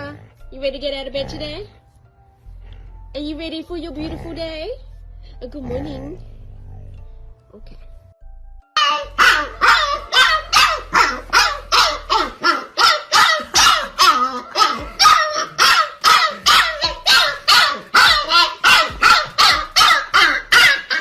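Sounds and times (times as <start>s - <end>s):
dog barking rapidly: 8.8s - 21.0s.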